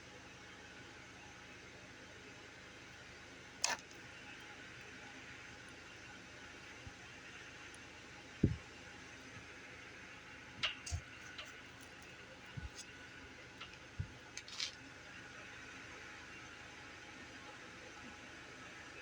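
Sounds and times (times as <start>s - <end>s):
soft thumps: 8.4s - 8.6s, 12.6s - 12.8s.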